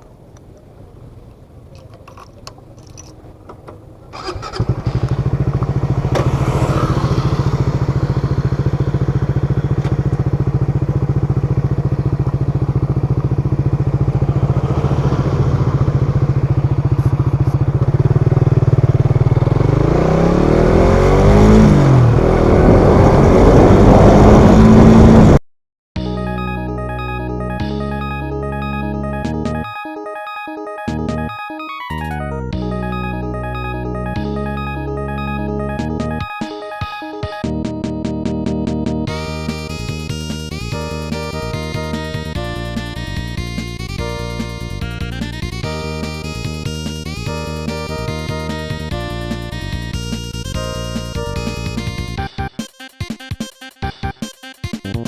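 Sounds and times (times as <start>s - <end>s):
motorcycle engine idling and revving: 0.0s - 25.4s, 32.6s - 36.3s, 37.4s - 52.4s
music: 26.0s - 55.0s.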